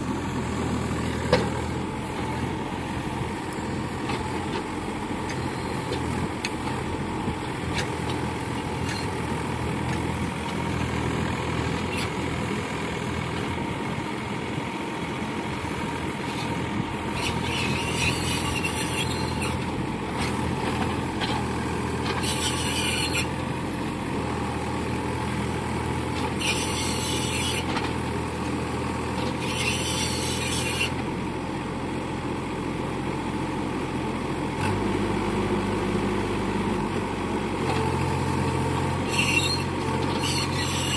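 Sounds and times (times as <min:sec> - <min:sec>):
diesel engine running: 0:00.0 - 0:40.9.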